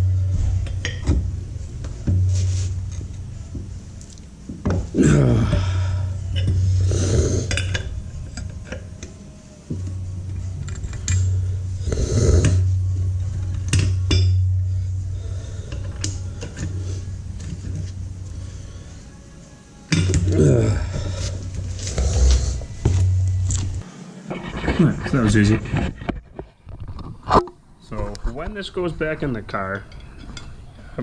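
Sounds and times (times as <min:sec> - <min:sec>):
background music with bass: 0:00.0 - 0:23.8.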